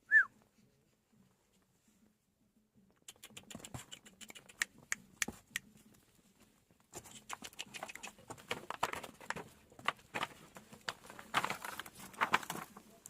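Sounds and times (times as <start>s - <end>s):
puppies scrabbling and pattering: 6.9s - 12.9s.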